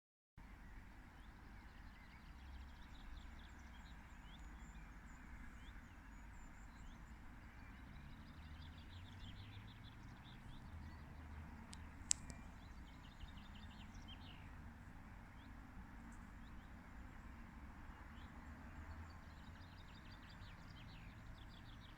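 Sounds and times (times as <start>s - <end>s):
small birds chirping: 1.2s - 17.5s
sharp click: 11.7s - 12.5s.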